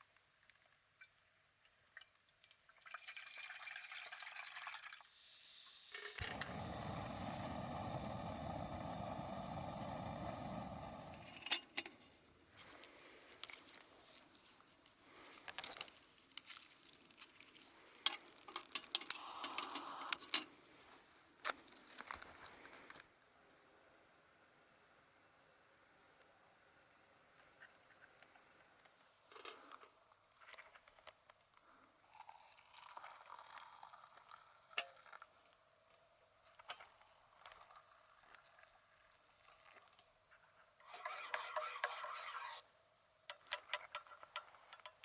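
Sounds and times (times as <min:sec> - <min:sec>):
liquid pouring: 0:02.4 - 0:12.4, 0:32.1 - 0:35.2.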